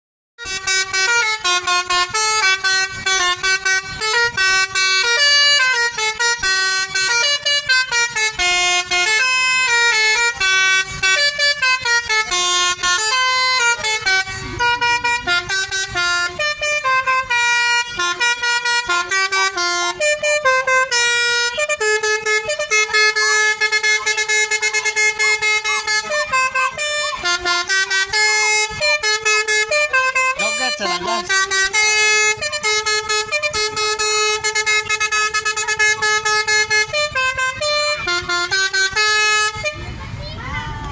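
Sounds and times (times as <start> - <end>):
multi-tone bus horn melody: 0.4 - 40.4.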